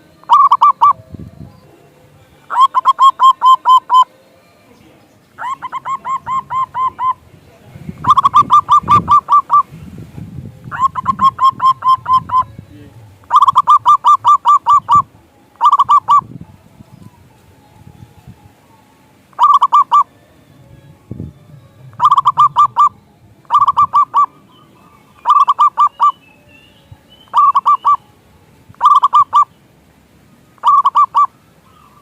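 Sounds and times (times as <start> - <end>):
dove cooing: 0.0 - 4.7, 5.3 - 7.3, 8.0 - 9.8, 10.6 - 17.3, 18.6 - 20.2, 21.5 - 26.2, 27.3 - 28.0, 28.7 - 29.5, 30.6 - 32.0.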